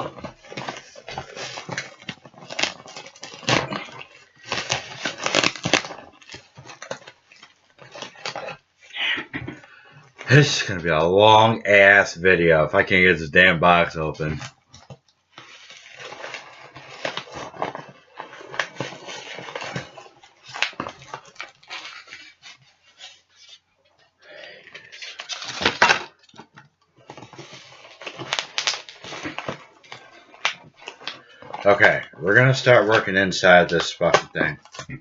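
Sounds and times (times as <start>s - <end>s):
cardboard box being opened: 0.0s - 8.7s, 15.4s - 23.6s, 24.9s - 31.7s.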